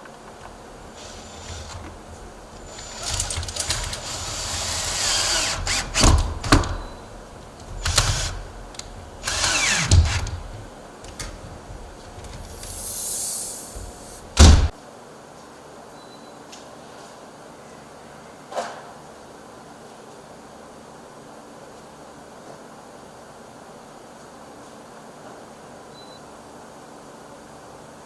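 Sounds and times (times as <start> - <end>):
clunks: 0.0 - 14.7
power drill running: 0.0 - 14.7
loud knock: 7.8 - 14.7.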